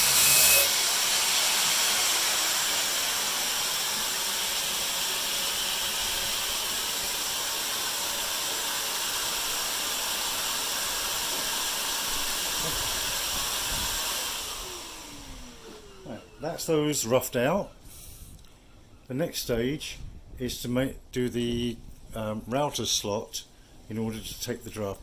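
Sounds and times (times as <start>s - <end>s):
electric power tool whirring: 0.0s - 16.6s.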